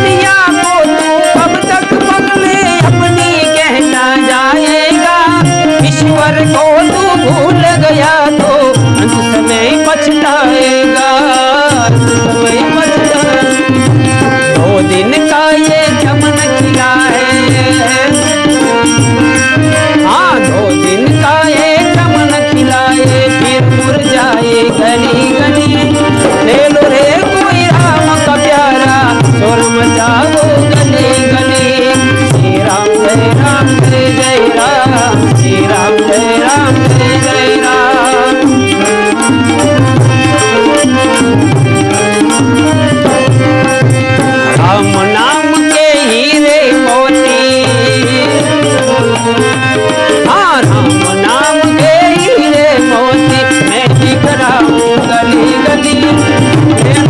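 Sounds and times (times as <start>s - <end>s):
harmonium melody: 0.0s - 57.0s
jingling percussion: 0.0s - 57.0s
hand drum beat: 38.4s - 46.0s, 47.5s - 57.0s.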